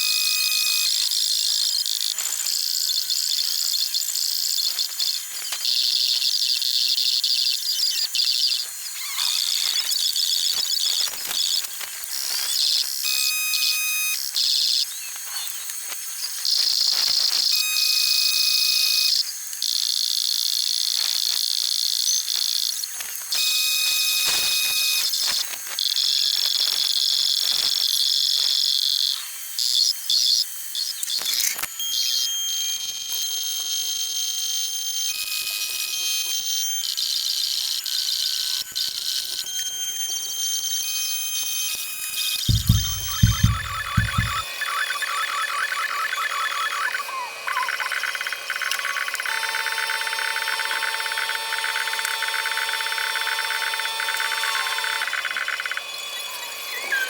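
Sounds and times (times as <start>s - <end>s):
two-tone beep: 42.5s - 44.4s
cicadas buzzing: 42.5s - 44.5s.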